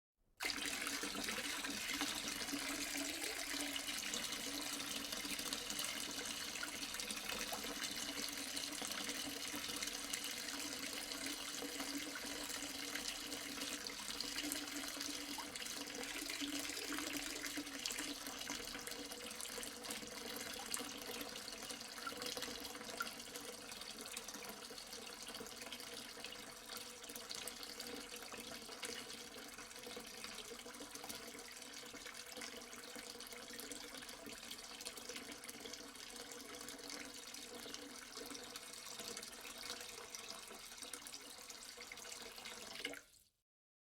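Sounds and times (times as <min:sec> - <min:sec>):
water pouring into a sink: 0:00.4 - 0:43.3.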